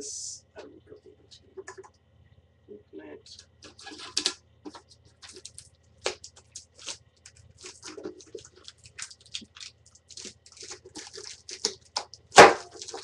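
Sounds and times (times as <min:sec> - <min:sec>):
person speaking: 0:00.0 - 0:01.8, 0:02.7 - 0:04.1
small scratches and clicks: 0:03.3 - 0:13.0
plastic shrink wrap crinkling: 0:03.6 - 0:13.0.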